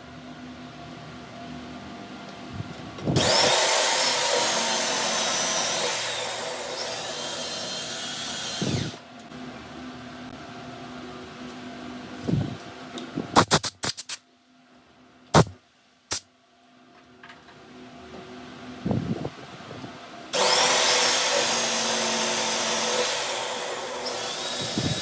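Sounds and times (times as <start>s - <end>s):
power tool whining: 3.2s - 9.0s, 20.4s - 25.0s.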